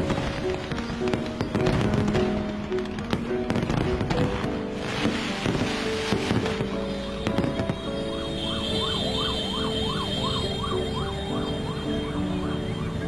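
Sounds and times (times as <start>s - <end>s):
firework bangs: 0.0s - 11.0s
background music: 0.0s - 13.0s
wailing siren: 7.2s - 13.0s.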